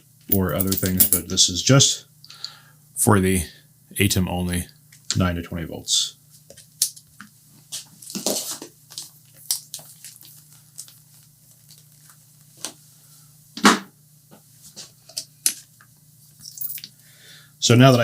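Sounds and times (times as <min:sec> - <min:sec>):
steady low hum: 0:00.0 - 0:06.7.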